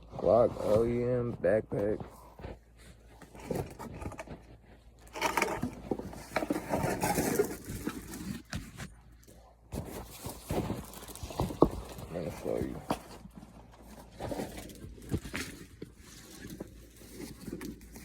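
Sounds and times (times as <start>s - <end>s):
backpack rustling and scraping: 2.2s - 9.0s.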